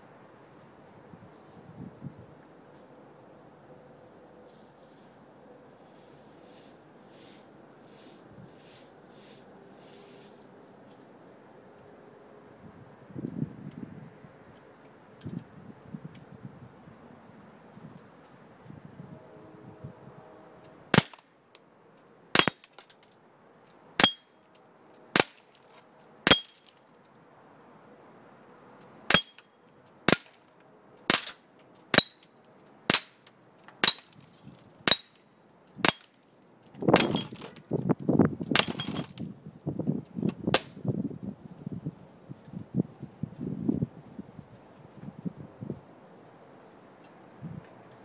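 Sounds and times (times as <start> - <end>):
low rustling noise: 0.3 - 11.4.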